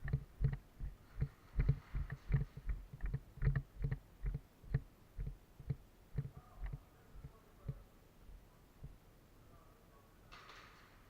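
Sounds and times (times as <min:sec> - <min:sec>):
footsteps dull thuds: 0:00.0 - 0:07.8.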